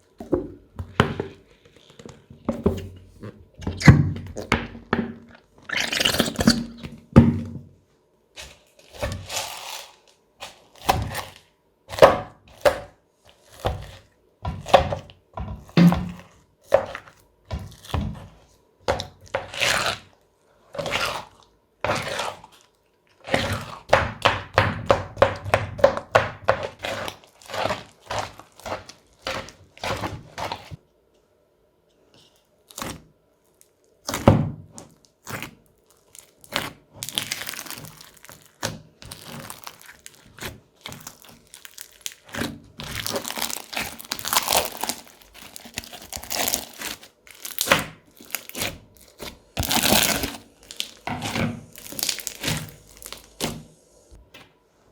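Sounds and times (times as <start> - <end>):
crunchy slime being squeezed: 5.2 - 7.4, 8.6 - 12.7, 26.6 - 30.7, 32.7 - 53.7.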